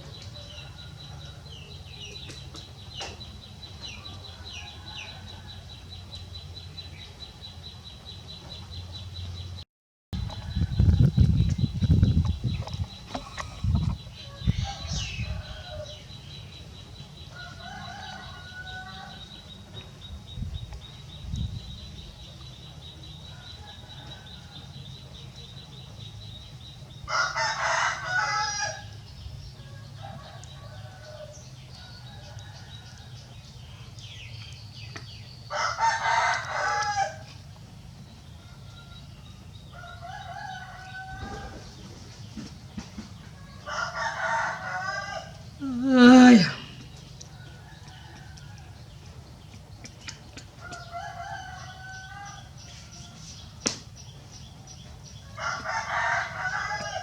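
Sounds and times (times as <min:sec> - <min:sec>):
rooster crowing: 0:14.2 - 0:16.1, 0:17.3 - 0:19.3, 0:27.1 - 0:29.0, 0:35.5 - 0:37.3, 0:39.7 - 0:41.7, 0:43.5 - 0:46.6, 0:50.6 - 0:53.2, 0:55.3 - 0:57.0.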